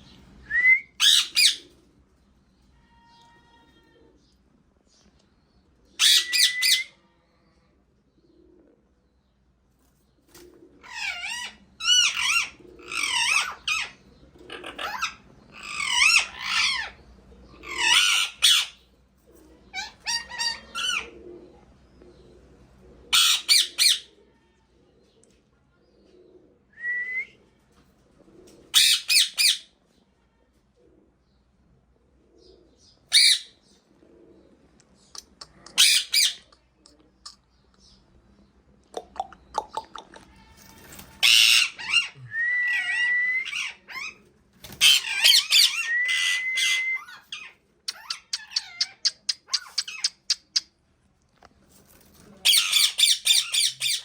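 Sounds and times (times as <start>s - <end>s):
parrot squawking: 1.0s - 1.6s, 6.0s - 6.9s, 10.8s - 17.0s, 17.6s - 18.8s, 19.7s - 21.1s, 23.1s - 24.1s, 28.7s - 29.7s, 33.1s - 33.6s, 35.6s - 36.5s, 39.7s - 50.7s, 52.4s - 54.0s.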